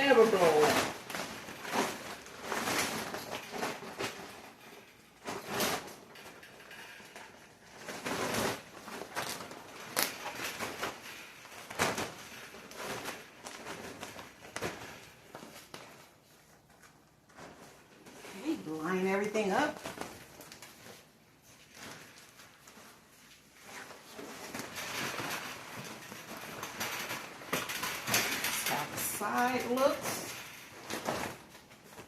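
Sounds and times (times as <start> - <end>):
plastic cover rustling and crinkling: 0.0 - 32.0.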